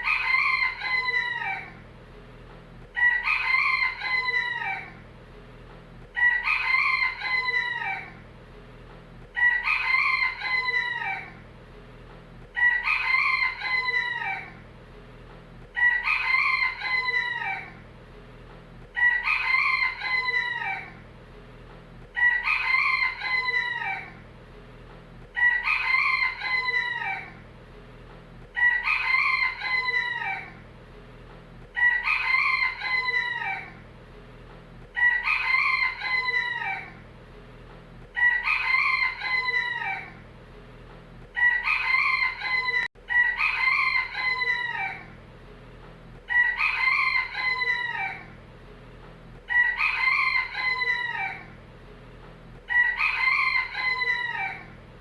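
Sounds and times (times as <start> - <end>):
rooster crowing: 0.0 - 1.8, 2.8 - 5.0, 6.0 - 8.2, 9.3 - 11.4, 12.6 - 14.6, 15.7 - 17.8, 19.0 - 21.0, 22.1 - 24.2, 25.3 - 27.4, 28.5 - 30.6, 31.7 - 33.8, 34.9 - 37.0, 38.1 - 40.2, 41.3 - 45.2, 46.2 - 48.4, 49.4 - 51.6, 52.6 - 54.8.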